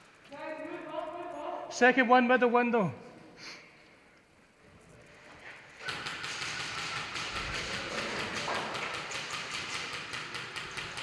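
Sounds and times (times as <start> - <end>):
airsoft guns firing: 5.8 - 11.0.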